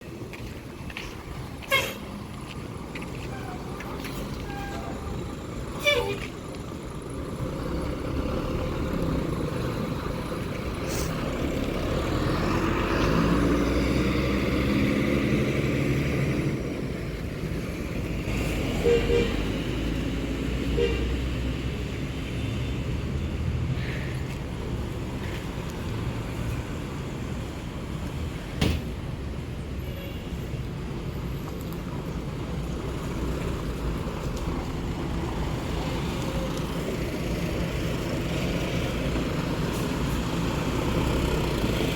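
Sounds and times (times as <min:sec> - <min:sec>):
large vehicle passing: 0:06.4 - 0:22.3.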